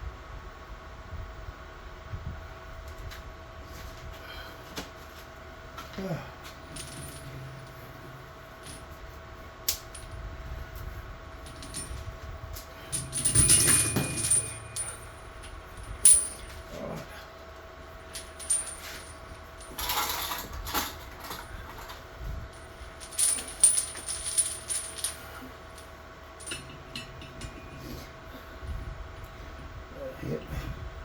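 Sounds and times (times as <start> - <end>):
electric fan humming: 1.1 - 31.0
chain links clinking: 6.5 - 9.0, 11.4 - 17.0, 18.0 - 28.3.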